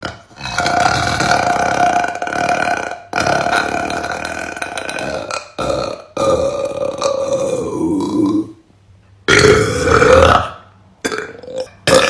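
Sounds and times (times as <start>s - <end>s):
woman burping: 9.3s - 12.0s.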